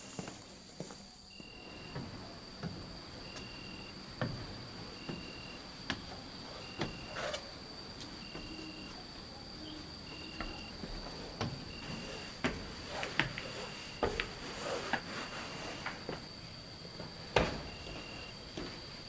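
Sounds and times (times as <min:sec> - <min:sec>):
cricket steady high trill: 0:00.0 - 0:19.0
cricket short chirps: 0:06.3 - 0:10.8.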